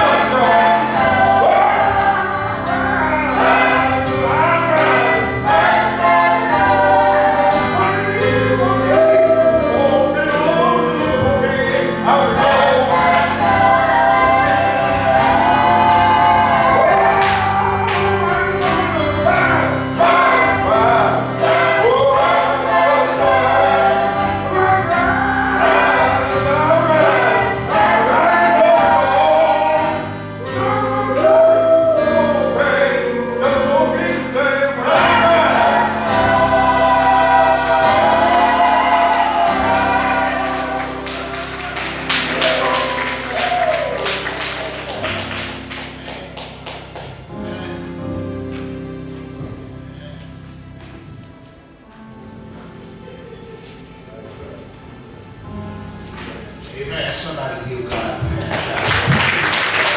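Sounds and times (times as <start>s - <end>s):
church choir singing gospel: 0.0s - 59.9s.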